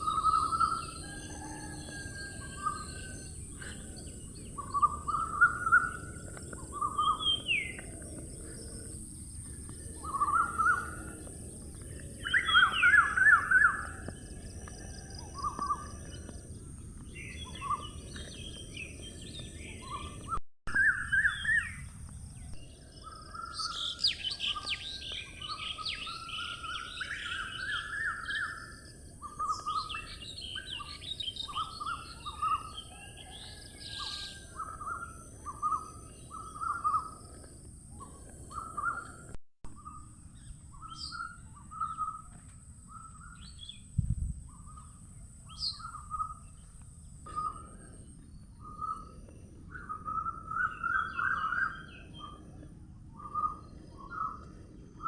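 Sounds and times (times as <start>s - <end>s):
birds chirping and singing: 0.0s - 55.0s.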